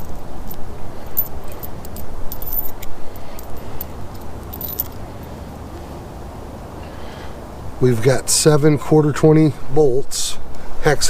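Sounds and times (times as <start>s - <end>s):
metal hardware clinking: 0.0s - 5.0s.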